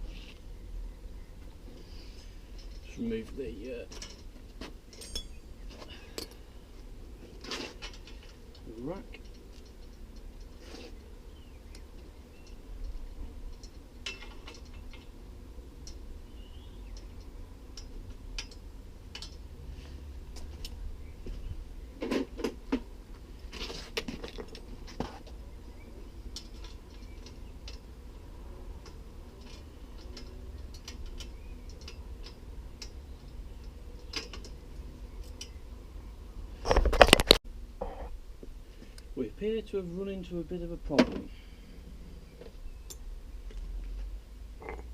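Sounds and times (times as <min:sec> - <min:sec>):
hand tools clinking on metal: 0:04.9 - 0:06.4.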